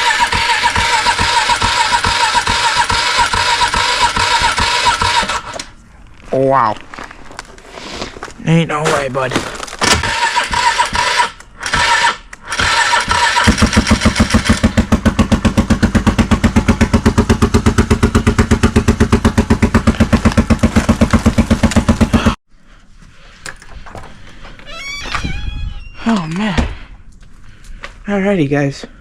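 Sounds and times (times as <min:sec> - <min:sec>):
quad engine idling: 0:00.0 - 0:05.6, 0:10.1 - 0:22.4.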